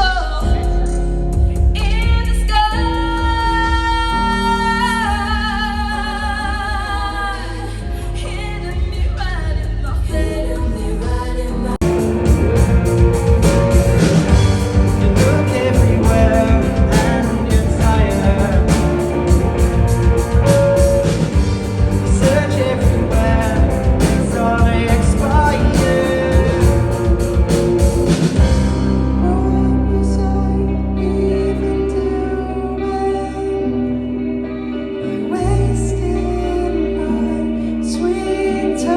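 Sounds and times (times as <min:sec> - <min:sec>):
live rock band with singing: 0:00.0 - 0:38.9.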